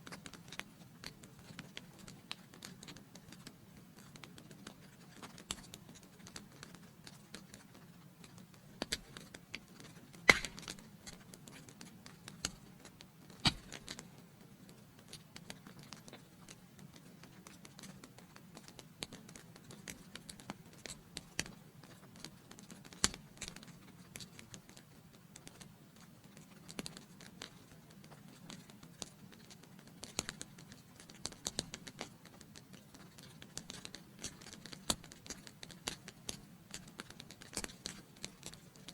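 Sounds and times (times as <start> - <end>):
wood fire crackling and popping: 8.1 - 38.9.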